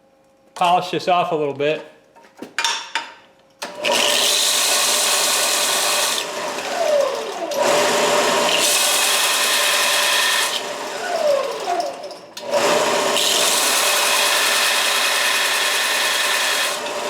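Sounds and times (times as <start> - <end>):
belt sander running: 3.6 - 17.0.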